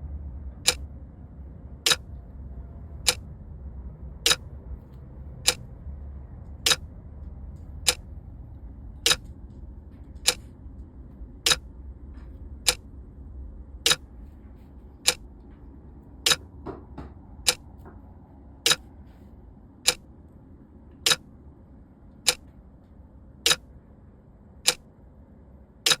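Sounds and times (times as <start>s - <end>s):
low hum: 0.0s - 26.0s
clock ticking: 0.6s - 0.8s, 5.4s - 5.6s, 6.6s - 6.8s, 7.8s - 8.1s, 9.0s - 9.3s, 10.2s - 10.5s, 11.4s - 11.7s, 12.6s - 12.9s, 13.8s - 14.1s, 15.0s - 15.3s, 16.2s - 16.5s, 17.4s - 17.7s, 18.6s - 18.9s, 19.8s - 20.0s, 20.9s - 21.2s, 22.2s - 22.6s, 23.4s - 23.7s, 24.6s - 24.9s.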